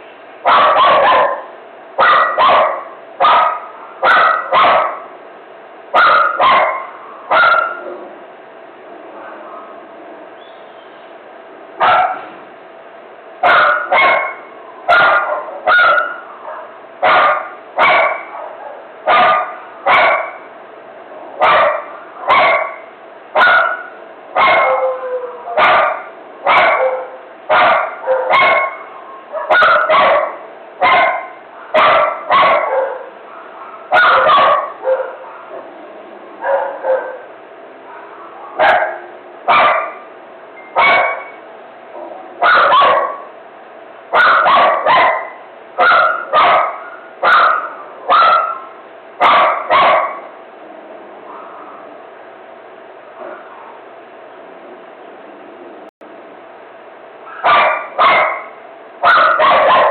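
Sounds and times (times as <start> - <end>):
dog barking: 0.4 - 5.1, 6.0 - 7.9, 11.8 - 12.4, 13.4 - 20.5, 21.4 - 35.7, 36.4 - 40.1, 40.7 - 41.4, 42.0 - 43.3, 44.1 - 50.3, 51.2 - 51.9, 57.3 - 59.9.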